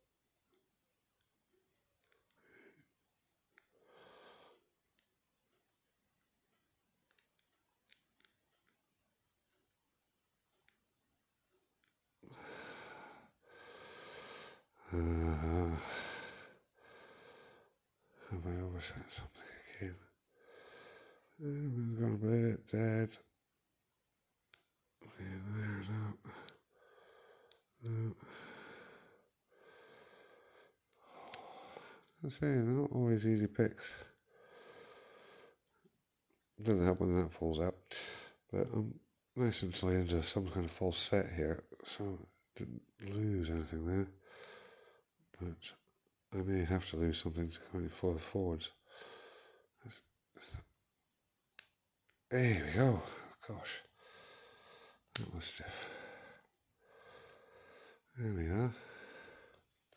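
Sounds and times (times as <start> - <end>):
person sighing heavily: 12.2 - 17.5
lock pick clicking in padlock: 31.2 - 31.4, 55.1 - 55.5
soft breath out: 55.7 - 59.8.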